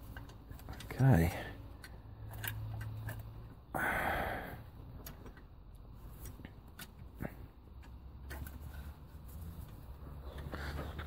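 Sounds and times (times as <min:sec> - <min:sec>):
metal parts clicking and tapping: 0:00.0 - 0:03.6
heavy breath out: 0:03.7 - 0:04.8.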